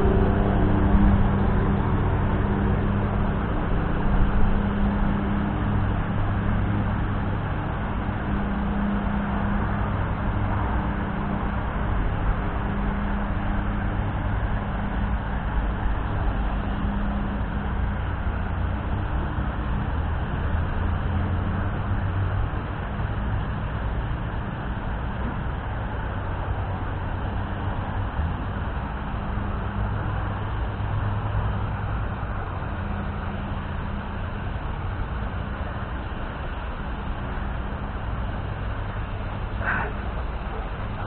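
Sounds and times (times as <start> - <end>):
low rumble with hum: 0.0 - 41.0.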